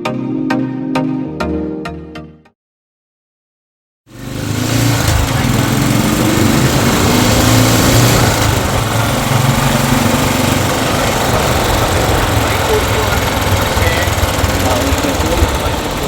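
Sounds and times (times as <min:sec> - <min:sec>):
engine-like rumble: 0:04.1 - 0:16.0
rushing hiss: 0:04.6 - 0:16.0.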